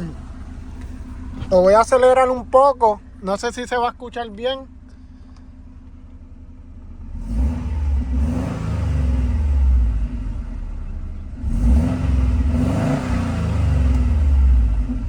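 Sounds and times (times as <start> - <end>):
car engine revving: 0.0 - 3.2, 7.0 - 15.0.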